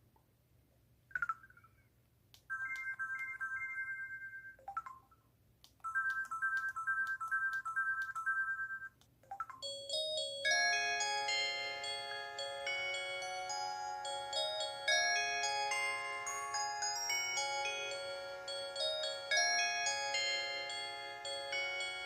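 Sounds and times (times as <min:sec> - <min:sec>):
chiming phone melody: 0:02.5 - 0:04.7, 0:05.8 - 0:08.9, 0:09.6 - 0:22.0.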